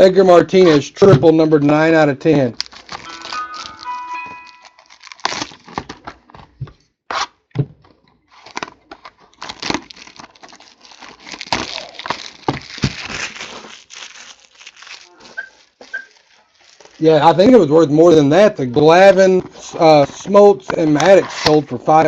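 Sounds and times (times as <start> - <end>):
cardboard rustling: 2.3 - 17.6
plastic wrap crinkling and tearing: 2.4 - 6.4, 8.2 - 17.7.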